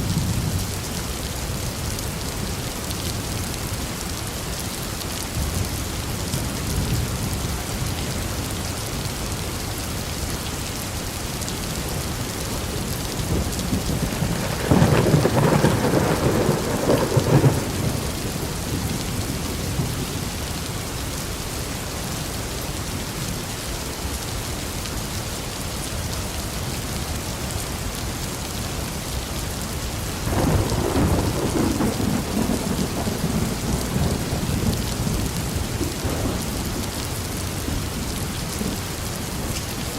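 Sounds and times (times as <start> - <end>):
steady rain: 0.0 - 39.9
thunder rolling: 13.3 - 18.9, 30.3 - 36.9.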